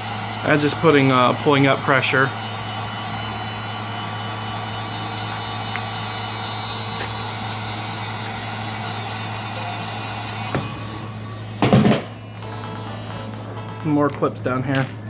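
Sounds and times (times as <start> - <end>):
heat gun blowing hiss: 0.0 - 12.2
loud clatter: 11.6 - 12.2.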